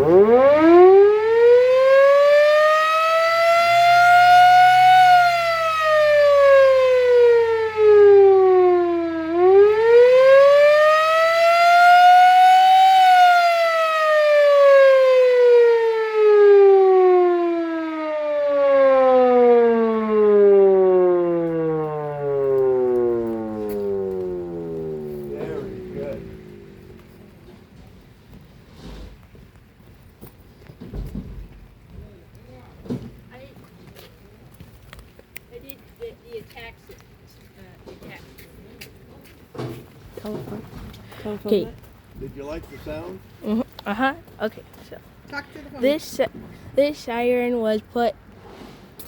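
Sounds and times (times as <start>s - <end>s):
mining siren wailing: 0.0s - 28.0s.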